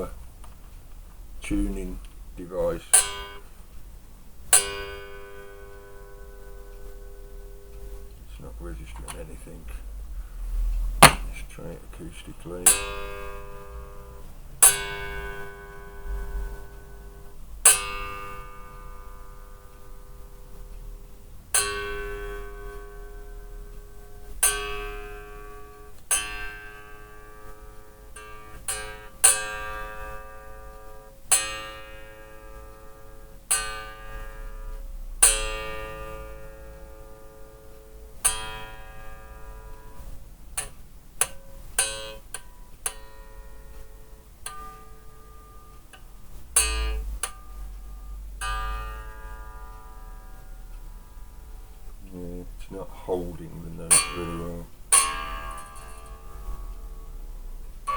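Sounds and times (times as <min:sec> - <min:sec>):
bass guitar notes plucked: 0:08.1 - 0:16.7, 0:46.4 - 0:57.9.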